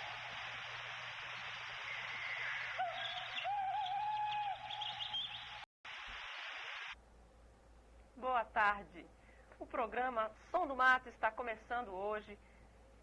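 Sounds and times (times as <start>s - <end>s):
tape hiss: 0.0s - 3.3s, 5.3s - 13.0s
bird-like whistled call: 1.8s - 5.6s
fainter higher calls: 1.8s - 5.6s.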